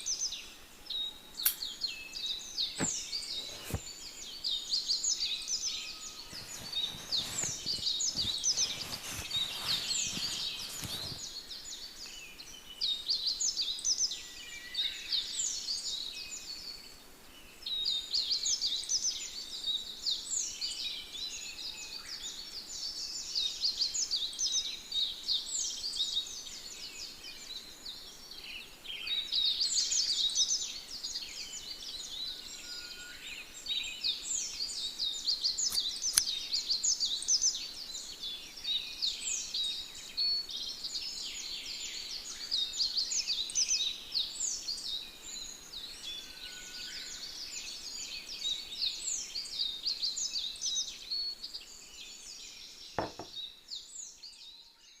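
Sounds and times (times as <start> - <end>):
small birds chirping: 0.0 - 55.0
sharp click: 1.4 - 1.7, 35.7 - 36.3
low knock: 53.0 - 53.3.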